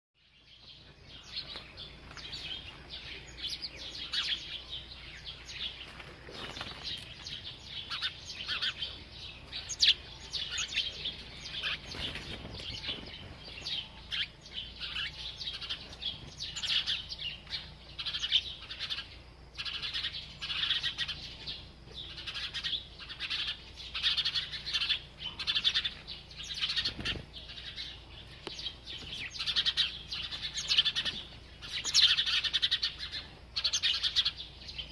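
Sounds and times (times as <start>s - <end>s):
sparrows chirping: 0.2s - 34.9s
flutter of wings: 5.8s - 7.5s, 11.4s - 13.7s, 26.6s - 27.4s.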